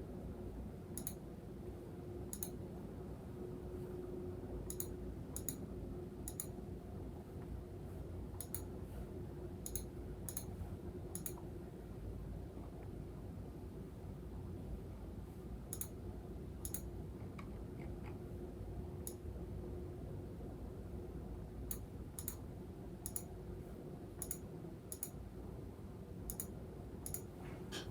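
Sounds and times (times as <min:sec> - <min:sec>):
sharp thin clicks: 0:01.0 - 0:01.2, 0:02.3 - 0:02.6, 0:04.7 - 0:05.6, 0:06.3 - 0:06.5, 0:09.7 - 0:10.5, 0:11.2 - 0:11.4, 0:15.7 - 0:16.0, 0:16.6 - 0:16.9, 0:21.7 - 0:22.4, 0:23.0 - 0:23.3, 0:24.2 - 0:25.2, 0:26.3 - 0:27.3.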